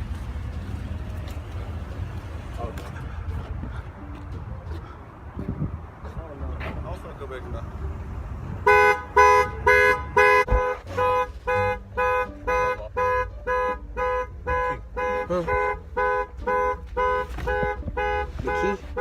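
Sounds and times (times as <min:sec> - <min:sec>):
car horn honking alarm: 0:08.6 - 0:19.0.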